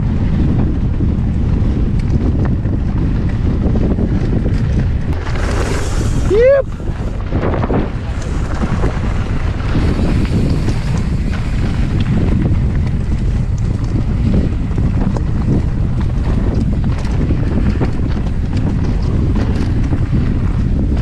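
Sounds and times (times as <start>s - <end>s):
wind buffeting microphone: 0.0s - 21.0s
small clicks and ticks: 1.9s - 3.4s, 9.7s - 20.6s.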